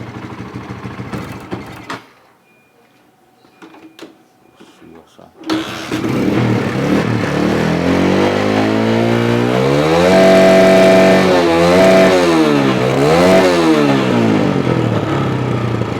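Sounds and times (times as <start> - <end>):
engine knocking: 0.0 - 2.0, 5.6 - 15.9
motorcycle engine revving: 0.0 - 2.1, 5.5 - 15.9.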